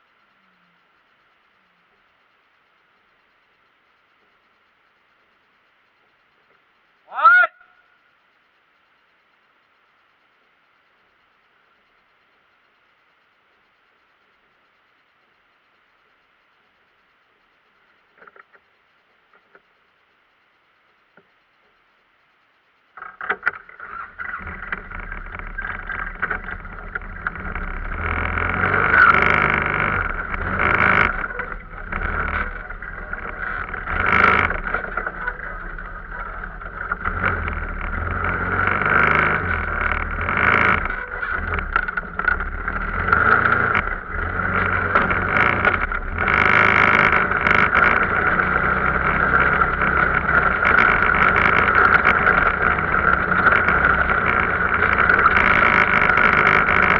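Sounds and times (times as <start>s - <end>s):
off-road vehicle engine running: 23.0s - 56.9s.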